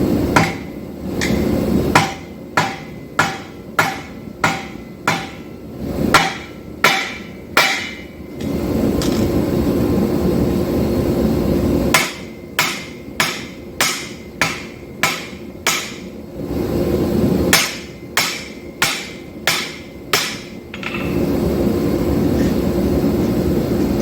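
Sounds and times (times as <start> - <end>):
hammer blows on anvil: 0.3 - 8.2, 11.9 - 16.1, 17.5 - 21.2.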